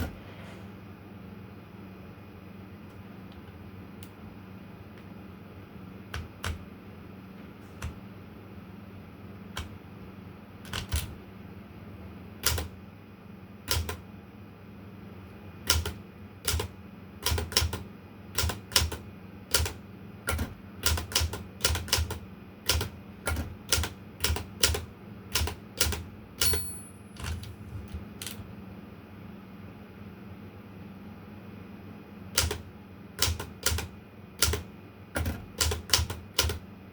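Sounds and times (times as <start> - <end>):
typewriter key strikes: 10.6 - 11.1, 12.4 - 12.7, 13.7 - 14.0, 15.7 - 17.8, 18.4 - 27.5, 32.4 - 32.6, 33.2 - 36.6
typewriter bell ringing: 26.4 - 27.4.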